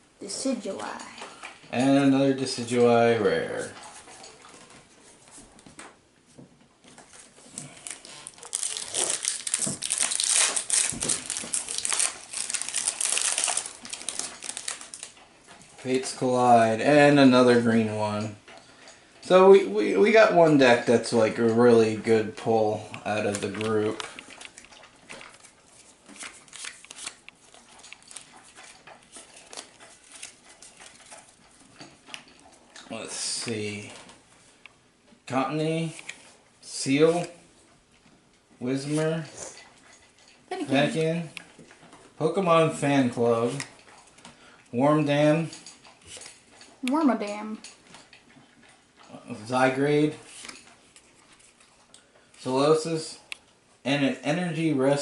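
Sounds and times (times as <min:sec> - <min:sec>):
foil wrapper crinkling: 0:07.5 - 0:15.2, 0:23.1 - 0:31.2.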